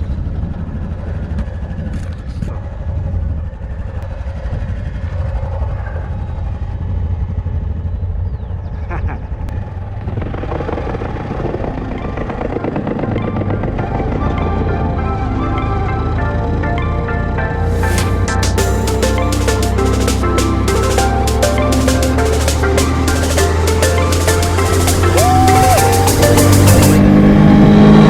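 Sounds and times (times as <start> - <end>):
music: 11.7 - 27.2.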